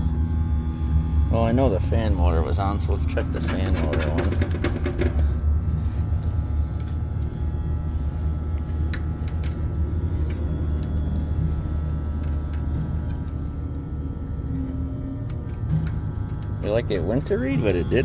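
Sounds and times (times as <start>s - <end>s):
air conditioner fan humming: 0.0s - 18.0s.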